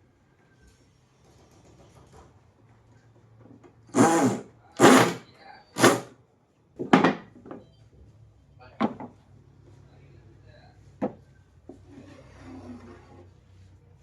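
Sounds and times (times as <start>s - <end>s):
noisy woodworking strokes: 3.9s - 5.2s, 5.8s - 6.1s.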